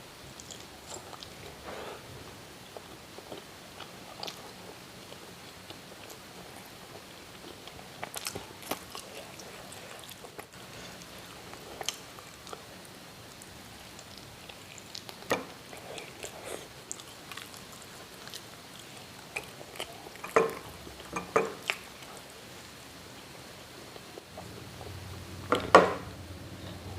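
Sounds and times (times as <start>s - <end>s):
chewing and wet mouth sounds: 0.3s - 1.7s, 2.6s - 22.4s.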